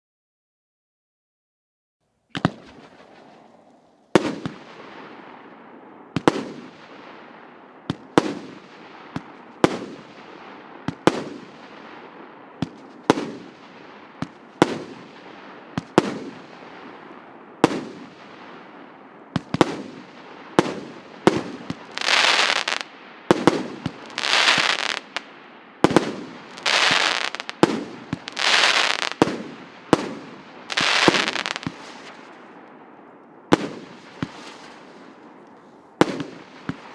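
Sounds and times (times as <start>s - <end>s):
firework cake bangs: 25.8s - 32.2s.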